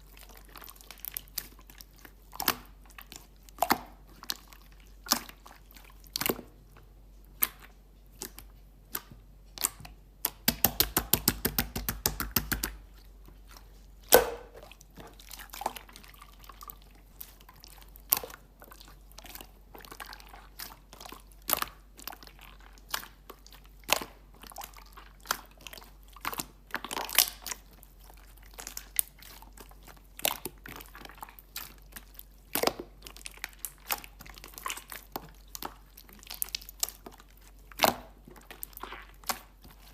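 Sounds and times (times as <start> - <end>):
sticky slime clicks and pops: 8.9 - 12.8, 14.1 - 14.6.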